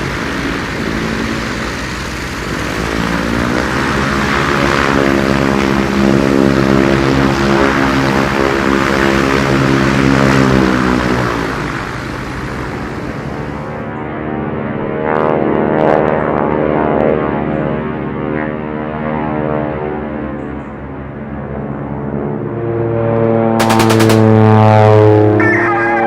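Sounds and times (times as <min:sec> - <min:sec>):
model airplane motor and propeller: 0:00.0 - 0:13.8.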